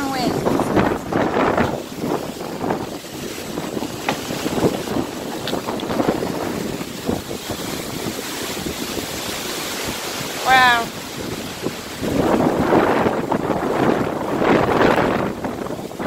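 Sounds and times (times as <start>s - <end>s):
wind on microphone: 0.0s - 16.0s.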